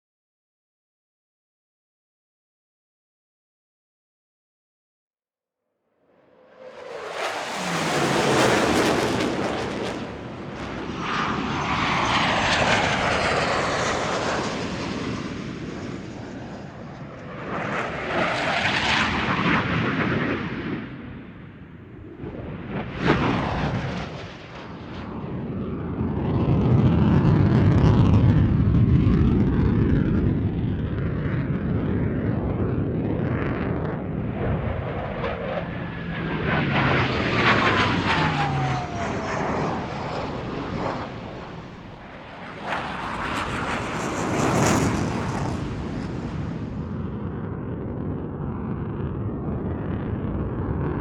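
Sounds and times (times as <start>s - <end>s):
jet fighter passing: 6.1s - 25.7s, 32.0s - 51.0s
falling whistle: 36.8s - 41.8s.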